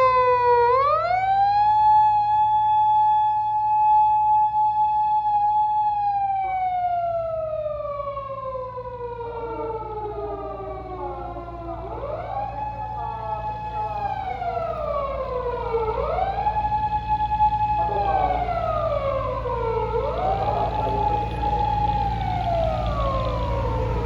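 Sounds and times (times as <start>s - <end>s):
electronic wail siren: 0.0s - 24.0s.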